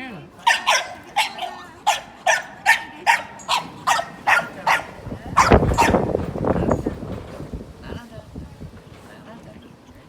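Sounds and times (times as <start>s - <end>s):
puppy yipping: 0.4s - 6.2s.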